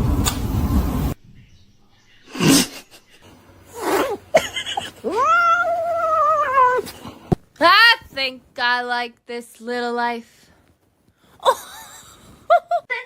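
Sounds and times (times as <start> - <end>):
cat yowling: 5.0 - 6.9.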